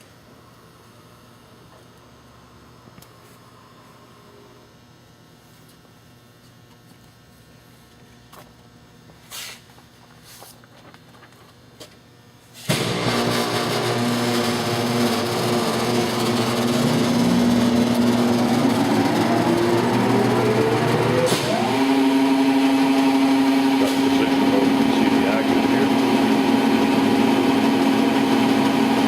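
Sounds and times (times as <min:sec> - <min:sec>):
surface grinder spinning up: 0:12.7 - 0:29.0.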